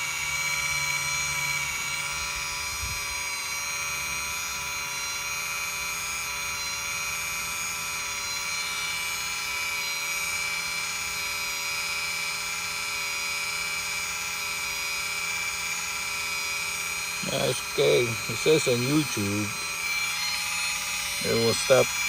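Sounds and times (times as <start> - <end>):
brake actuator motor whining: 13.5 - 22.0.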